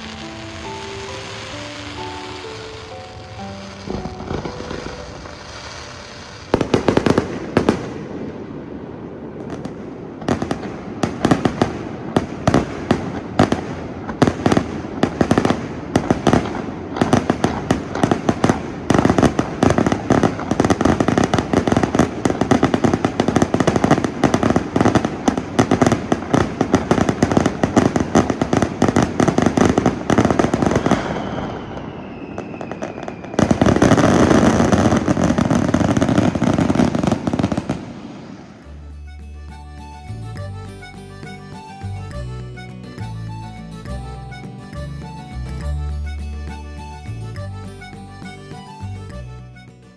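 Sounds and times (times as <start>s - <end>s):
fireworks bangs and crackles: 0.0s - 42.2s
faint falling whistle: 30.7s - 33.7s.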